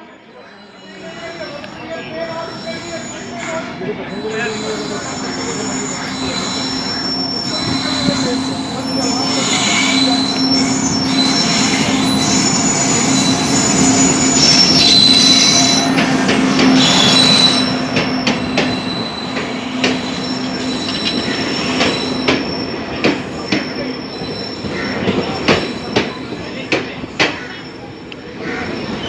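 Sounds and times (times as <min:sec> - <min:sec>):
wheels squealing: 0:00.5 - 0:29.0
train wheels rumbling on rail: 0:00.6 - 0:29.0
wheels clacking over rail joints: 0:04.6 - 0:23.9.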